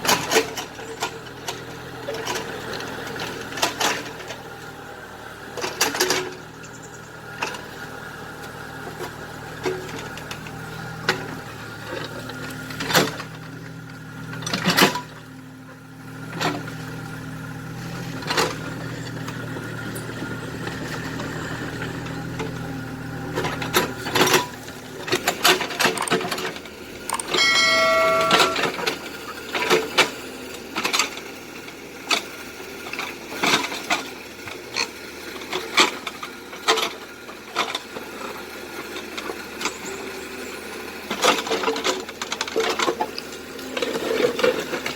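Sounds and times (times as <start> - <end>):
excavator motor hum: 0.0 - 44.9
clicks and knocks: 27.0 - 28.8
short high whine: 27.1 - 28.9.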